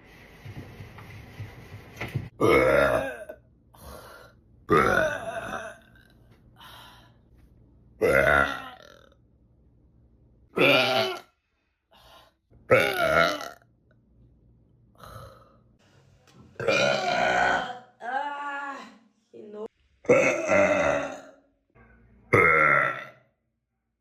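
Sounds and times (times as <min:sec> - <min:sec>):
woman burping: 0:02.4 - 0:03.4, 0:04.7 - 0:06.1, 0:08.0 - 0:09.1, 0:10.6 - 0:11.3, 0:16.6 - 0:17.9, 0:20.1 - 0:21.5, 0:22.4 - 0:23.2.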